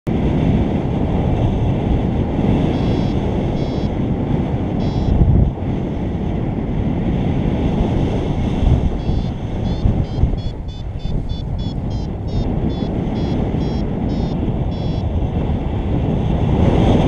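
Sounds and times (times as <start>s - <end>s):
wind buffeting microphone: 0.1s - 17.0s
short high beeps: 2.7s - 4.0s, 4.8s - 5.2s, 8.9s - 15.1s.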